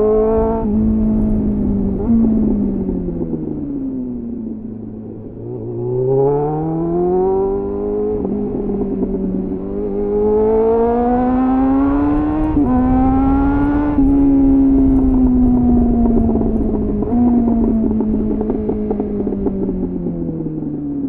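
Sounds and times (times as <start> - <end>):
motorcycle engine accelerating: 0.0 - 21.0.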